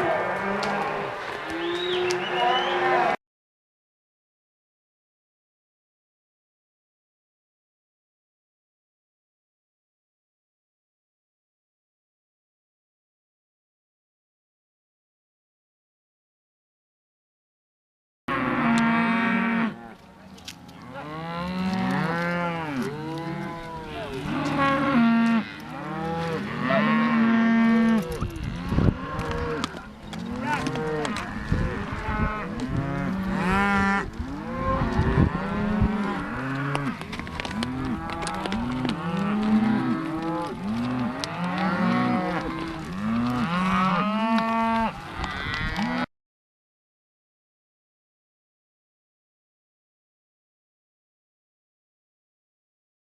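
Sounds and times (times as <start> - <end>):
cattle mooing: 0.0 - 3.2, 18.3 - 46.1.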